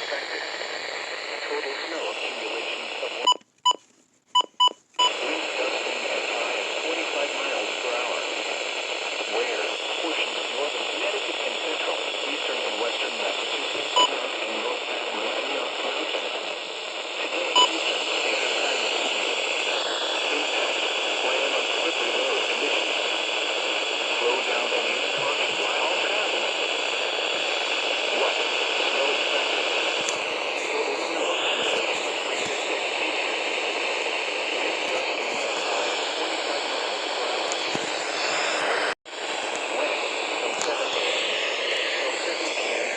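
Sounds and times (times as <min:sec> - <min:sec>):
faint whine tones: 0:00.0 - 0:42.9
radio static hiss: 0:00.0 - 0:42.9.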